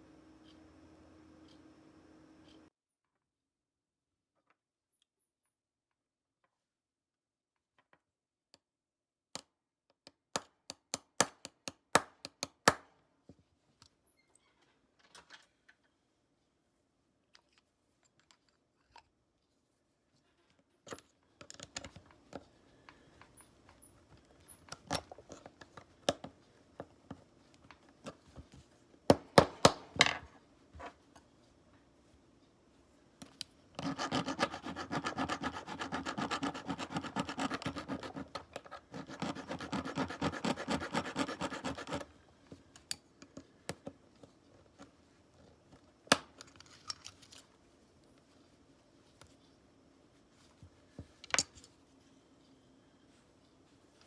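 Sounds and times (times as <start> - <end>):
hand tool scraping a knife: 33.8 - 42.1.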